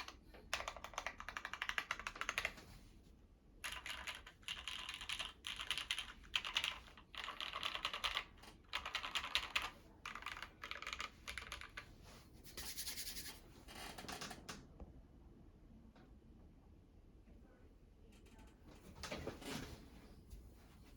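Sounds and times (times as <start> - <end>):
mechanical keyboard typing: 0.0 - 2.6, 3.6 - 11.9.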